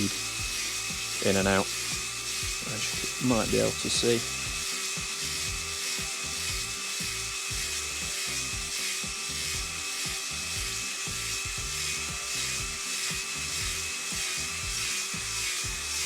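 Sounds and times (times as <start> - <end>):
cylinder hone rubbing metal: 0.0 - 16.0
drill whine: 0.0 - 16.0.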